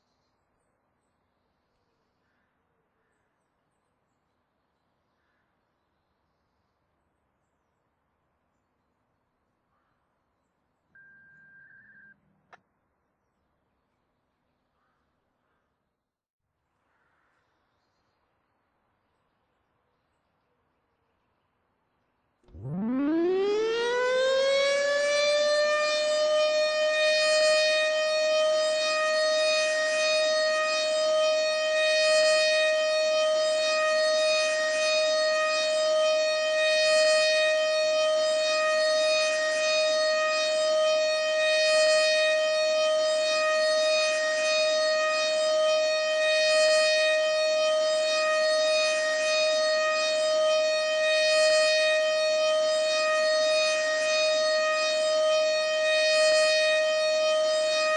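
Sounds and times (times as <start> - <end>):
warning siren steady pitch: 22.5 - 57.9.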